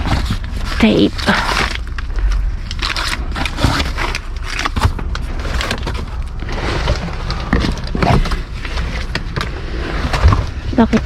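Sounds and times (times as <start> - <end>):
constant low rumble: 0.0 - 11.0
trash rustling: 0.0 - 11.0
items knocking and clattering: 2.8 - 11.0.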